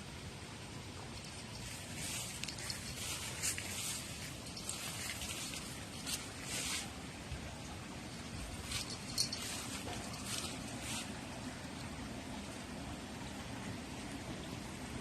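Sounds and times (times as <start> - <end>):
rustling crackles: 1.2 - 7.1, 8.1 - 11.4.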